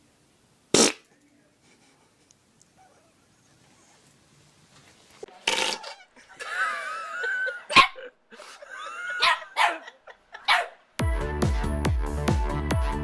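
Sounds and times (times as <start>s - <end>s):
dog whining: 2.8s - 3.4s, 5.3s - 6.2s
dog barking: 9.2s - 10.8s.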